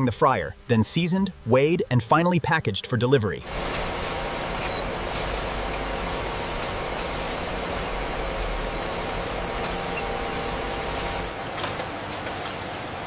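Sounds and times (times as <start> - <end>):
machinery hiss: 3.4 - 13.0
machinery low hum: 3.4 - 13.0.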